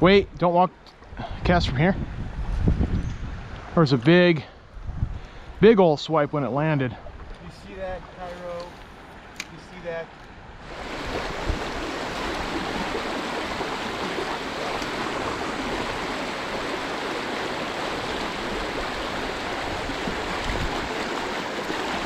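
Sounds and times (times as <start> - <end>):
stream water rushing: 6.0 - 22.0.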